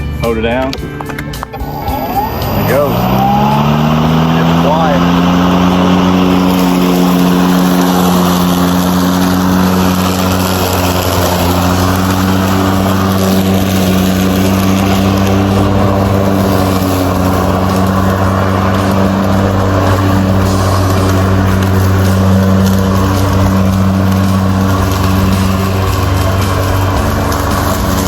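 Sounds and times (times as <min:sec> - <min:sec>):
electric lawn mower running: 0:01.0 - 0:28.0.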